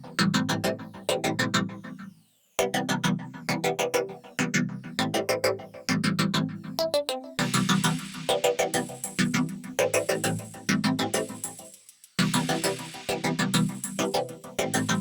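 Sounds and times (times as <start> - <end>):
electronic music with synthesizer: 7.4 - 15.0
drum machine beat: 10.1 - 15.0.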